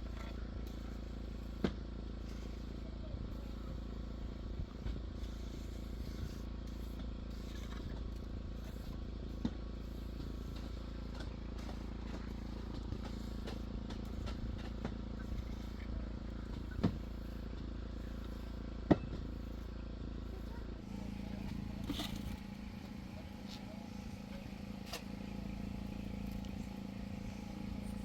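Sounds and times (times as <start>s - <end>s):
low mechanical hum: 0.0s - 28.0s.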